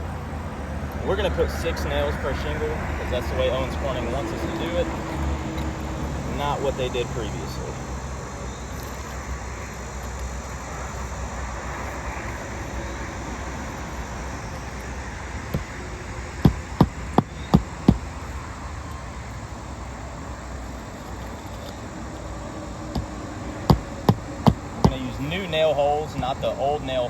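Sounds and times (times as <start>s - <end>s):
traffic hum: 0.0s - 27.0s
nails hammered into shingle: 16.4s - 18.1s, 22.9s - 26.6s.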